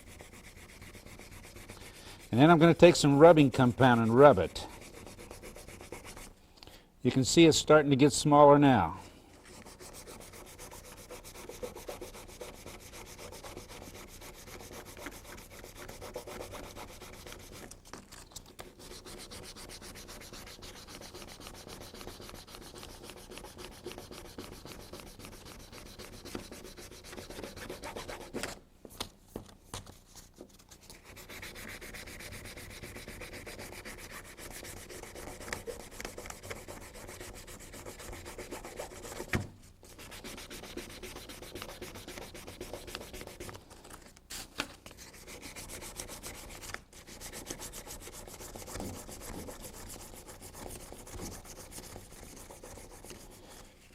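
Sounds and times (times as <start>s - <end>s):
sandpaper rasping on plastic: 0.0s - 6.3s, 9.5s - 28.6s, 30.7s - 53.8s.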